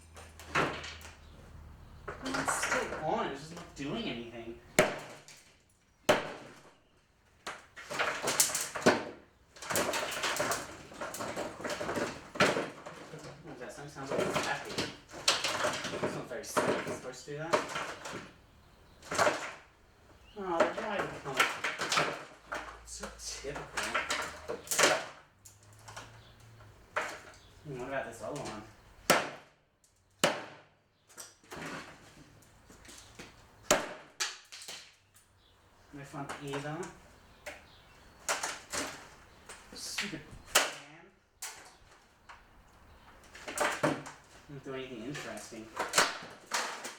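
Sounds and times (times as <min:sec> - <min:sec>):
plastic parts clattering and scraping: 0:00.0 - 0:04.2, 0:07.4 - 0:19.7, 0:20.3 - 0:28.7, 0:31.1 - 0:33.4, 0:43.1 - 0:46.9
plastic fan being struck: 0:04.7 - 0:05.3, 0:06.1 - 0:06.6, 0:29.0 - 0:29.5, 0:33.7 - 0:34.9
sharp hits on plastic fan: 0:04.7 - 0:06.8, 0:07.4 - 0:13.3, 0:29.0 - 0:29.6, 0:30.2 - 0:30.8, 0:33.3 - 0:35.0, 0:40.5 - 0:40.8.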